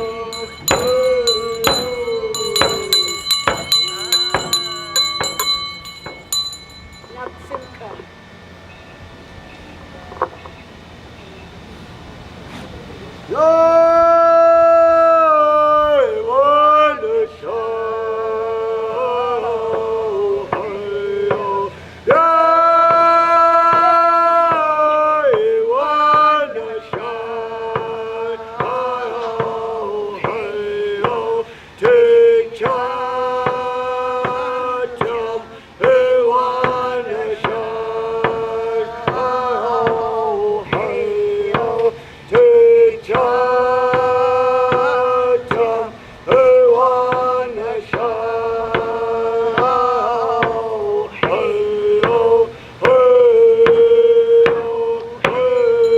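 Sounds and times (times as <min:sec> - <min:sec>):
man singing a chant-like song: 0:00.0 - 0:06.2, 0:13.3 - 0:55.9
steady beat of sharp strikes: 0:00.0 - 0:07.7, 0:35.8 - 0:40.1.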